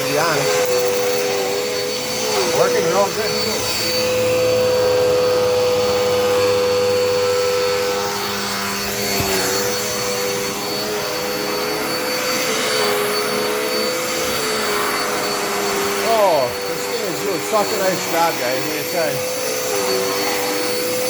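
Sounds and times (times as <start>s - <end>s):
upright vacuum cleaner running: 0.0s - 21.0s.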